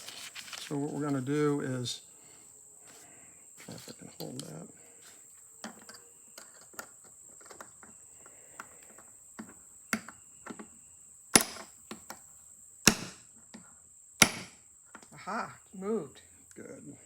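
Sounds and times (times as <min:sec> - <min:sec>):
hammer tapping steel punch: 0:11.4 - 0:12.0, 0:12.9 - 0:13.2, 0:14.2 - 0:14.6.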